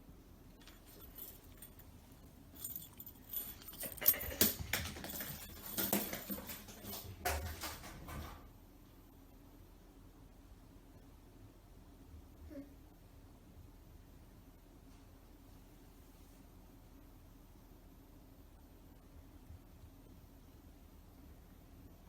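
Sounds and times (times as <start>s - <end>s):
light jangling: 0.6s - 8.4s
ball knocks and clatters: 0.6s - 8.5s.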